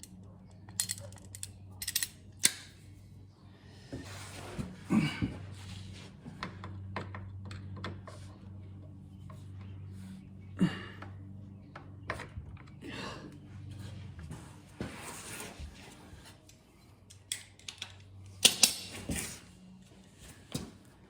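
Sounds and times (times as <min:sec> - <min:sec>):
hand tools clicking and scraping: 0:00.0 - 0:02.7.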